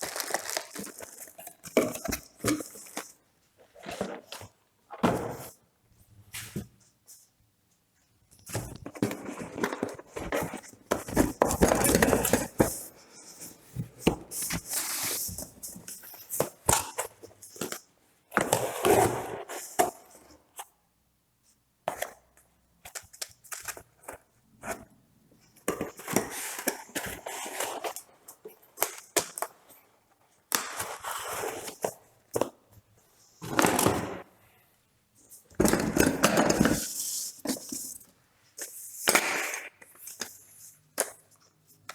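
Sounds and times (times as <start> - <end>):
packaging rustling and tearing: 0.0 - 1.5.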